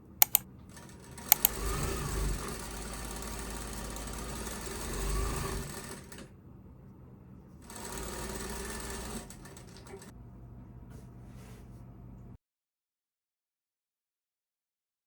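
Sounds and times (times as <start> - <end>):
sewing machine stitching: 1.3 - 6.2.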